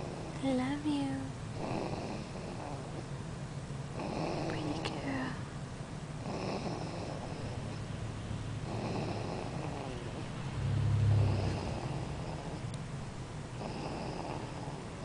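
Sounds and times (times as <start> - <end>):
baby snoring: 1.6 - 3.1, 4.0 - 5.4, 6.2 - 7.8, 8.6 - 10.3, 11.0 - 12.7, 13.5 - 15.0.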